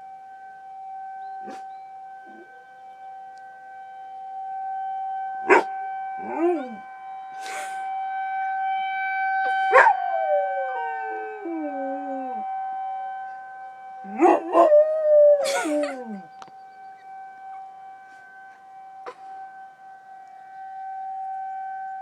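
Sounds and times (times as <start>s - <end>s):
tornado siren steady tone: 0.0s - 22.0s
dog howling: 2.3s - 2.7s, 5.5s - 6.8s, 9.4s - 12.4s, 14.0s - 16.4s.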